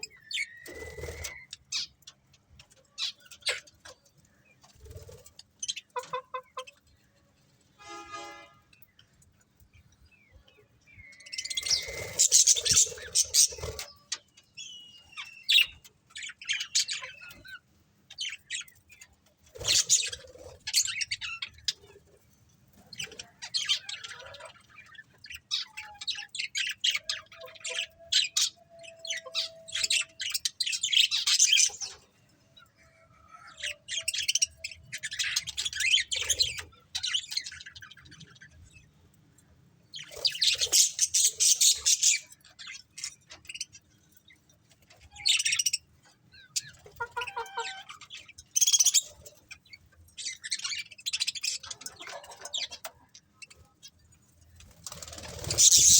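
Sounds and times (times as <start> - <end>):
budgerigars chirping: 11.1 - 14.0, 19.6 - 22.0, 40.0 - 42.3, 55.0 - 55.9.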